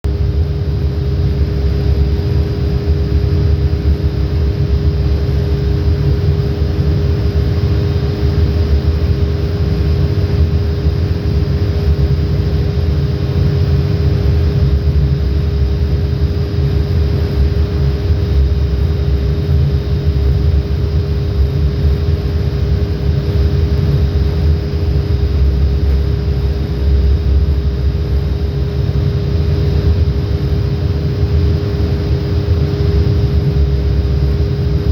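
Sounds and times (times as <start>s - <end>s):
constant humming tone: 0.0s - 34.9s
machinery rumbling: 21.4s - 31.9s.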